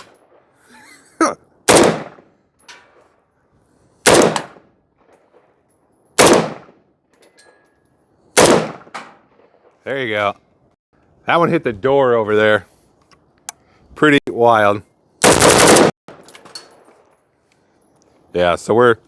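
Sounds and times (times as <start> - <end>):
rifle shots with echo: 1.7 - 2.3, 4.0 - 4.7, 6.2 - 6.8, 8.4 - 9.8, 15.2 - 16.2.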